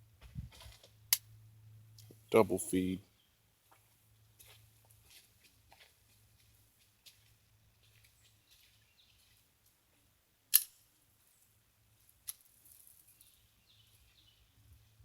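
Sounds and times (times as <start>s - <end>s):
metallic pistol clicks: 10.5s - 10.8s.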